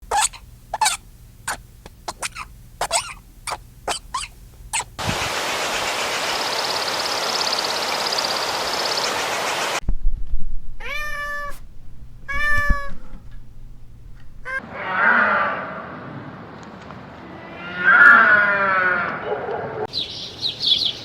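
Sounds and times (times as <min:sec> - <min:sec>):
steady hiss: 0:00.0 - 0:09.8
cat meowing: 0:00.1 - 0:04.9, 0:10.8 - 0:11.6, 0:12.2 - 0:13.3, 0:14.4 - 0:14.6.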